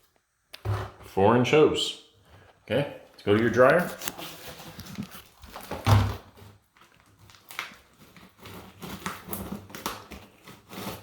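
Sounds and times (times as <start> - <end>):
vent hose rustling and scraping: 2.2 - 11.0.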